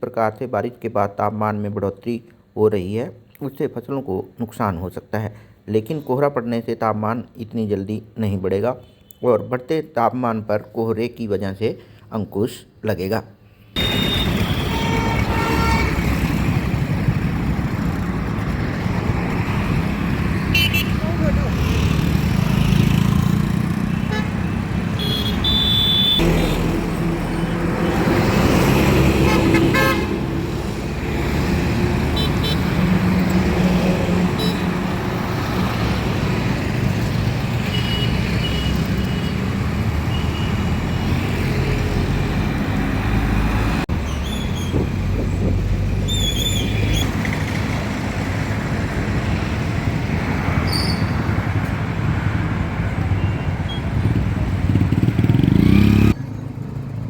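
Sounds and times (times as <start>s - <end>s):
car horn toots: 13.8s - 16.2s, 20.5s - 21.0s, 24.0s - 26.3s, 29.2s - 30.2s
traffic rumble: 13.8s - 57.0s.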